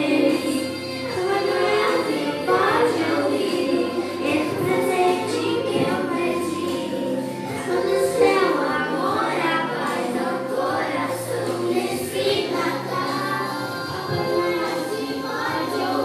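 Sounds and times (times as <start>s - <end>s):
children singing together: 0.0s - 16.0s
instrumental accompaniment: 0.0s - 16.0s.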